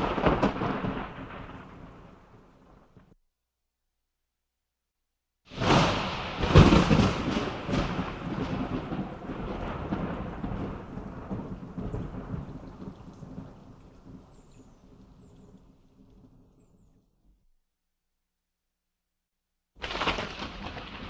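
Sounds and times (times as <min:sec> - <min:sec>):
thunder crack and rumble: 0:00.0 - 0:03.1, 0:05.5 - 0:16.5, 0:19.8 - 0:21.0.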